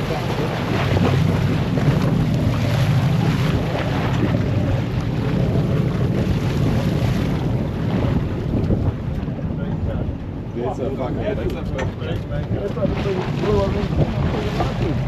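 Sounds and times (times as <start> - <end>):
water washing: 0.0 - 10.4, 11.0 - 15.0
wind buffeting microphone: 0.0 - 15.0.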